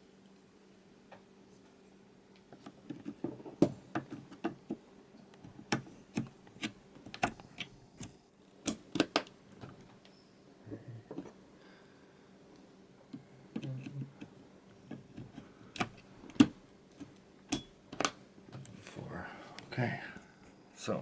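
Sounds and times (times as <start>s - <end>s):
latches snapping shut: 5.8s - 9.8s.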